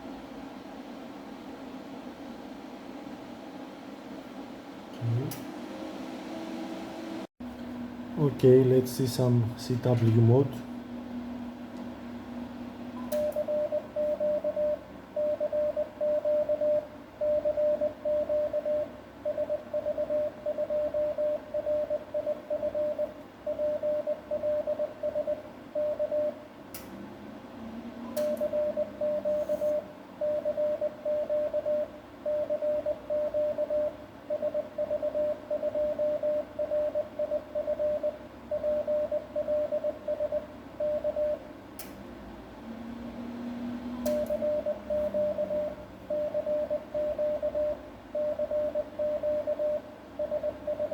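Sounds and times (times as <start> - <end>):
morse code beeps: 13.0 - 26.4, 28.0 - 41.4, 44.0 - 50.9.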